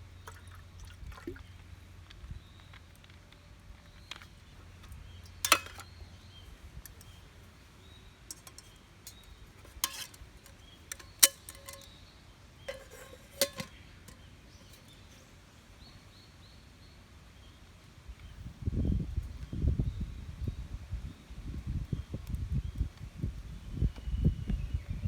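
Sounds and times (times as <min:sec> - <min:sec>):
metal cookware clinking: 0:05.3 - 0:06.0, 0:08.3 - 0:11.9, 0:12.7 - 0:14.9.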